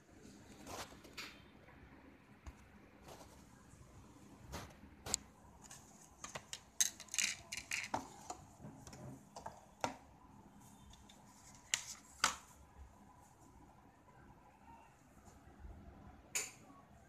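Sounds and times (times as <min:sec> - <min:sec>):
small hard objects handled: 0:05.6 - 0:08.3.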